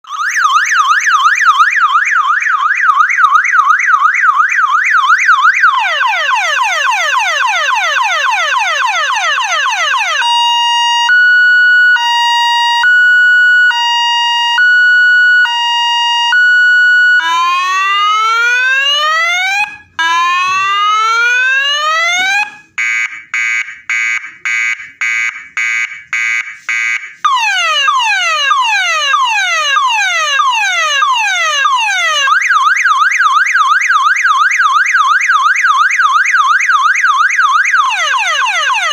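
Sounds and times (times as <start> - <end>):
electronic siren: 0.0 - 38.9.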